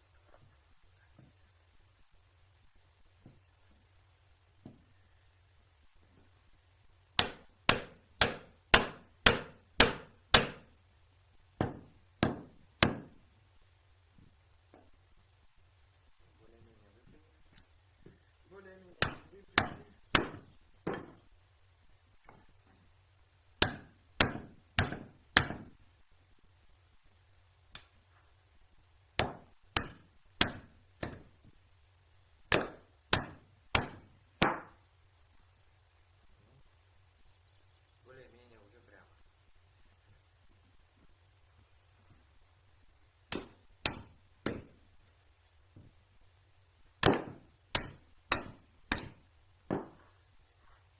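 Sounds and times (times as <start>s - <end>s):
hammer striking steel: 7.2s - 10.7s, 11.6s - 13.2s, 19.0s - 21.2s, 23.6s - 25.8s, 29.2s - 31.2s, 32.5s - 34.7s, 43.3s - 44.7s, 47.0s - 50.0s.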